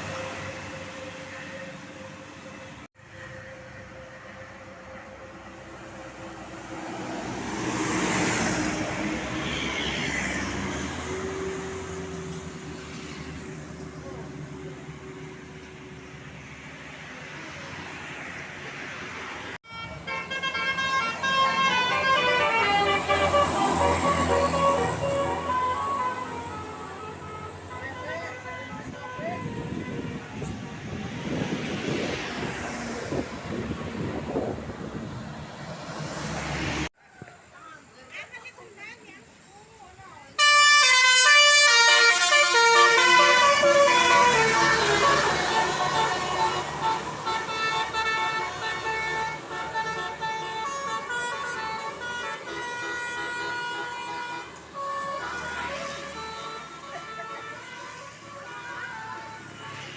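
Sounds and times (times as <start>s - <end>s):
vehicle passing close by: 5.7s - 19.6s, 21.1s - 36.9s, 42.7s - 50.2s
wind buffeting microphone: 28.6s - 35.8s.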